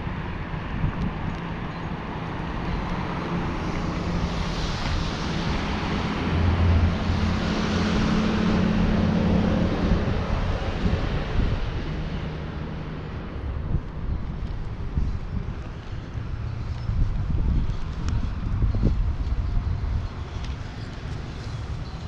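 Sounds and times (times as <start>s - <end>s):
vehicle passing: 2.0s - 19.6s.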